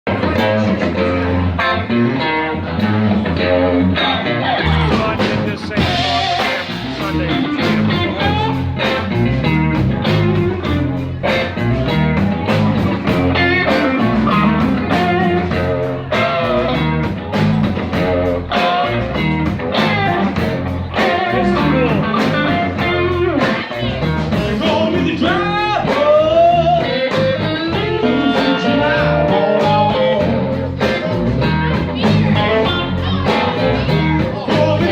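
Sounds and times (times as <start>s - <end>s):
blues band playing: 0.1s - 34.9s
electric guitar: 0.1s - 34.9s
person singing: 4.0s - 9.0s, 21.0s - 34.9s.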